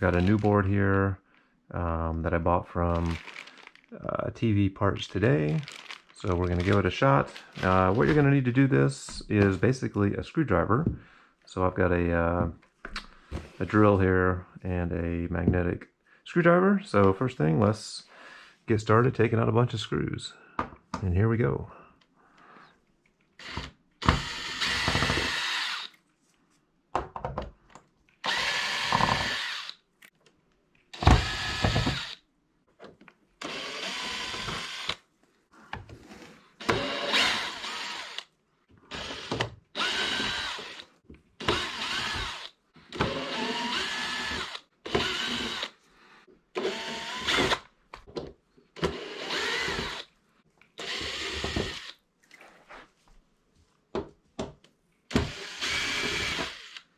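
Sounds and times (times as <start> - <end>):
cordless drill whining: 23.4 - 26.0, 28.2 - 29.8, 31.0 - 32.2, 33.4 - 35.0, 36.6 - 38.3, 38.9 - 45.8, 46.6 - 47.7, 48.8 - 50.1, 50.8 - 52.0, 55.1 - 56.9.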